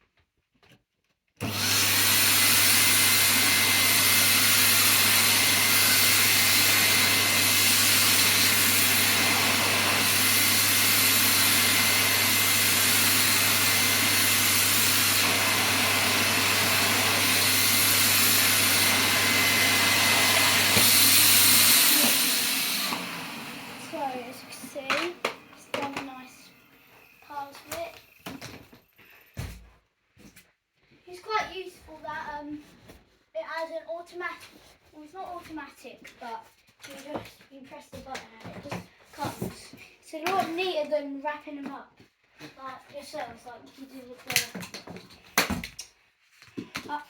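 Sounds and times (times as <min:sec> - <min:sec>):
vacuum cleaner running: 0:01.4 - 0:29.6.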